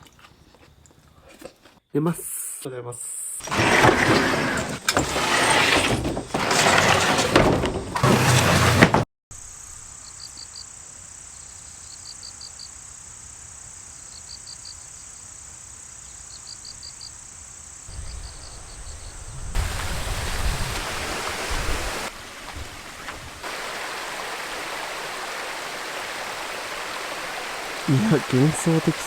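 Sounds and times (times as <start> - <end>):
insects chirping: 9.3 - 29.0.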